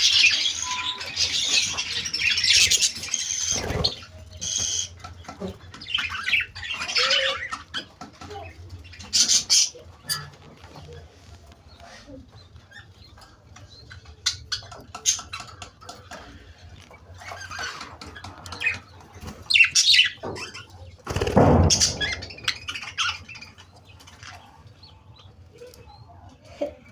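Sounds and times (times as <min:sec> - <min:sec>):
parrot chirping and squawking: 0:00.0 - 0:05.0, 0:05.8 - 0:08.0, 0:08.8 - 0:10.4, 0:17.1 - 0:20.8, 0:21.7 - 0:23.8
wings flapping and rustling: 0:02.7 - 0:06.1, 0:20.4 - 0:23.2.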